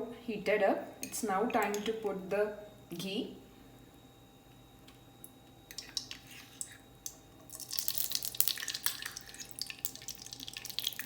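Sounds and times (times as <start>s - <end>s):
ghee crackling sizzle: 5.7s - 11.0s
hot fat popping: 7.5s - 11.0s.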